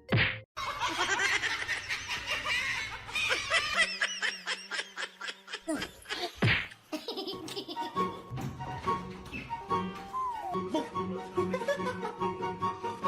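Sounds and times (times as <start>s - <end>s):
person laughing: 0.9s - 8.2s, 10.7s - 12.3s.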